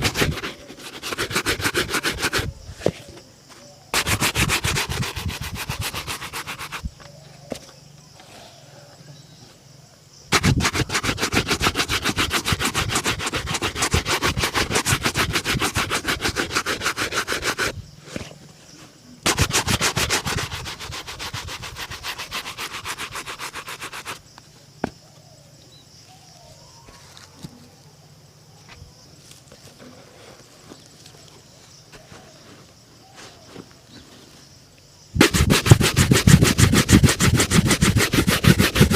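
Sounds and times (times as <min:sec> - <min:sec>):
brush buffing a shoe: 0:00.0 - 0:03.0, 0:04.0 - 0:06.9, 0:10.3 - 0:17.8, 0:19.3 - 0:24.2, 0:35.2 - 0:38.9.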